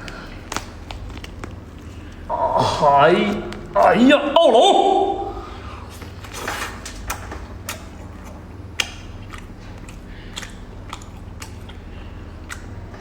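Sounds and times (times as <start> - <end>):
chewing and biting food: 0.0 - 2.3, 7.0 - 13.0
low hum: 0.0 - 13.0.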